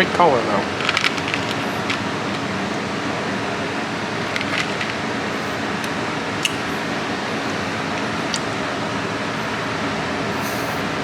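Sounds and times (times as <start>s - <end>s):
electric fans rushing: 0.0s - 11.0s
small items clicking and rustling: 4.3s - 6.7s.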